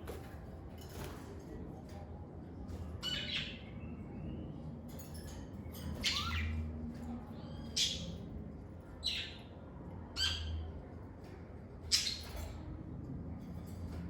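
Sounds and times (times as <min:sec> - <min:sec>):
lovebirds chirping and squawking: 0:03.0 - 0:03.9, 0:05.8 - 0:06.7, 0:07.4 - 0:08.3, 0:09.0 - 0:09.5, 0:10.1 - 0:10.7, 0:11.8 - 0:12.5.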